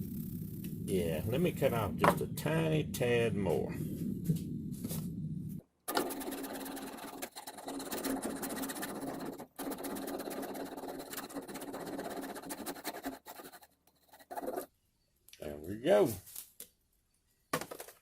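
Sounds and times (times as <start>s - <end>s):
saw cutting plastic pipe: 5.9s - 14.7s.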